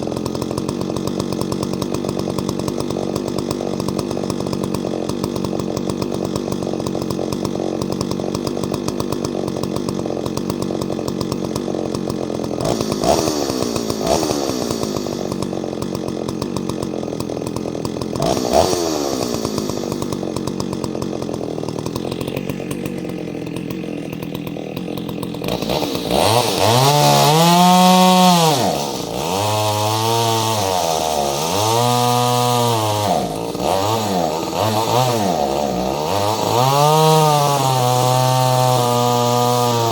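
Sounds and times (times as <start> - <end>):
chainsaw running and revving: 0.0 - 39.9.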